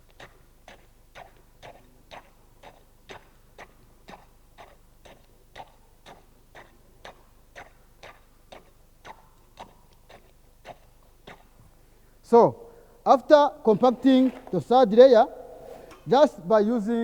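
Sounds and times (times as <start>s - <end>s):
concrete being compacted in mold: 13.3s - 16.2s.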